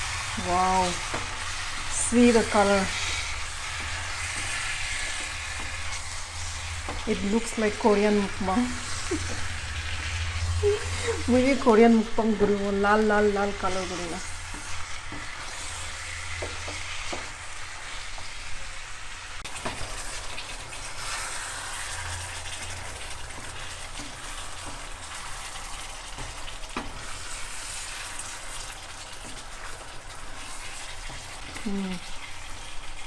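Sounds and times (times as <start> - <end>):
chicken sizzling in a pan: 0.0 - 33.0.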